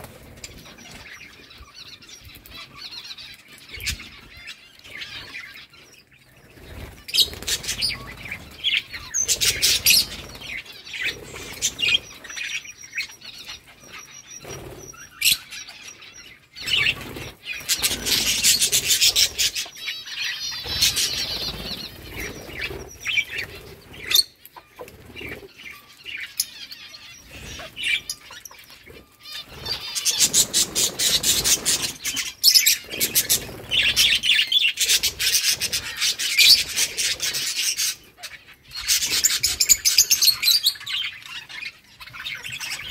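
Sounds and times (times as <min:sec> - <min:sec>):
wing fluttering: 0:00.0 - 0:01.4, 0:06.4 - 0:15.9, 0:16.6 - 0:25.6, 0:27.2 - 0:38.0
budgerigars chirping and chattering: 0:00.0 - 0:42.9.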